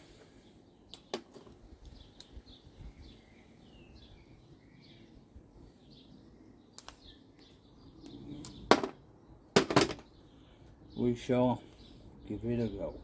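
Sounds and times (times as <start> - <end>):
bird chirps: 1.9 - 13.0
small sharp clicks: 6.8 - 8.6.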